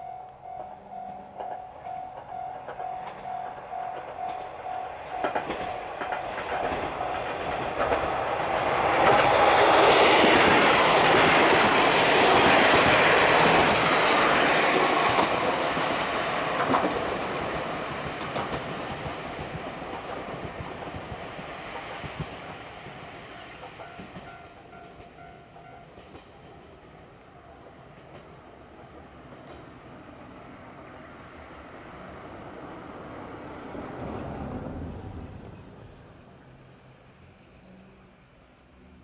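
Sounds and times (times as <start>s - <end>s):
faint level crossing bell: 0.0s - 7.8s
diesel train passing: 0.0s - 39.0s
wheels clacking over rail joints: 1.4s - 30.4s.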